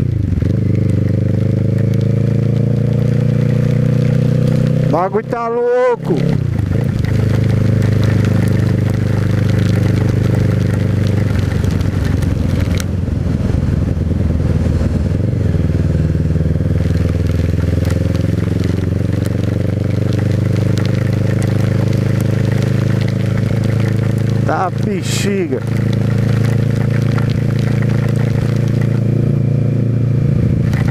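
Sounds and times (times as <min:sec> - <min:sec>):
heavy rain: 0:00.0 - 0:13.4, 0:15.6 - 0:29.3, 0:30.5 - 0:30.9
motorcycle engine cruising: 0:00.0 - 0:30.9
wind noise on microphone: 0:11.0 - 0:19.4, 0:25.5 - 0:30.9.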